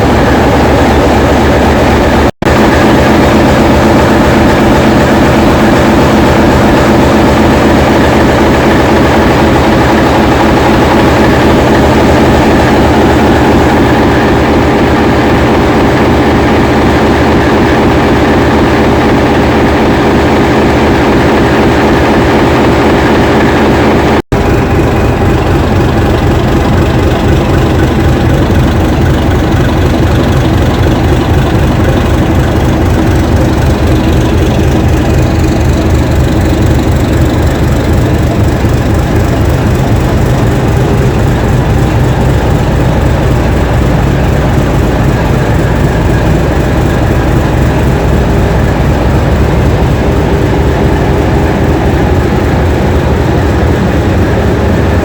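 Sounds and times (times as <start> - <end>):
diesel locomotive engine running: 0.0 - 55.0.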